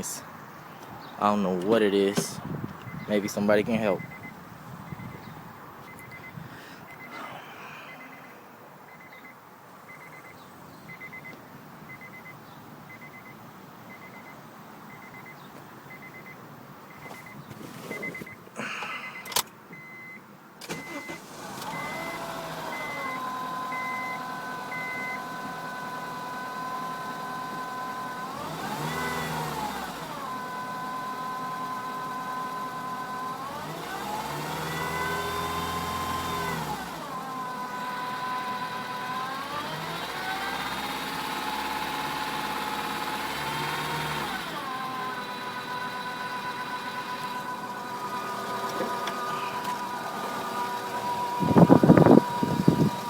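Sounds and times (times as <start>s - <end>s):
car engine cranking and starting: 0.0s - 9.3s, 9.9s - 13.3s, 13.9s - 53.0s
high whine from engine: 20.6s - 53.0s
engine revving: 20.7s - 53.0s.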